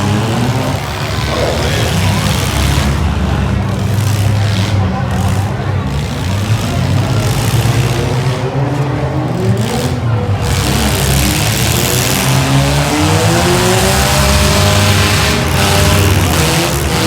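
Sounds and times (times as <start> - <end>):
car engines revving: 0.0 - 17.0.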